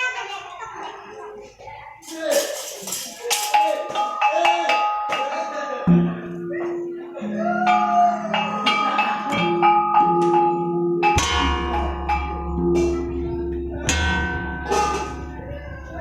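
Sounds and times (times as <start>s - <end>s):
metallophones struck with mallets: 2.0s - 16.0s
deep sustained tone: 11.2s - 16.0s.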